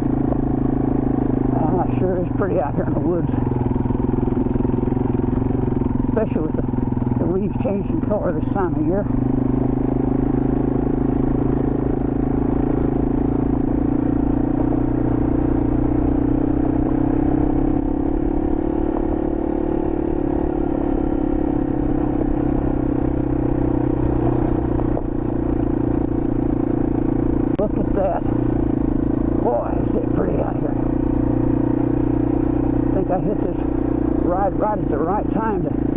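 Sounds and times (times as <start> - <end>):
motorcycle engine cruising: 0.0 - 35.9.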